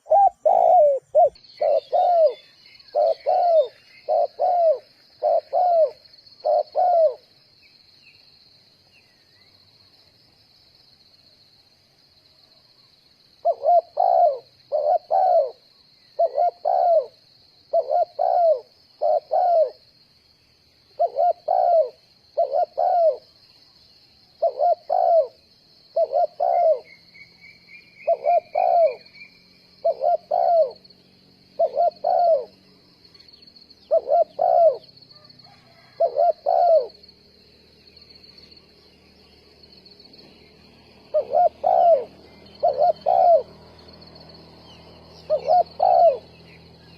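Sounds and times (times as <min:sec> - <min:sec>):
dove cooing: 0:00.0 - 0:07.4, 0:13.4 - 0:19.9, 0:20.9 - 0:23.4, 0:24.4 - 0:27.0, 0:27.7 - 0:30.9, 0:31.5 - 0:37.1, 0:39.2 - 0:46.9
high insect buzz: 0:24.1 - 0:46.9.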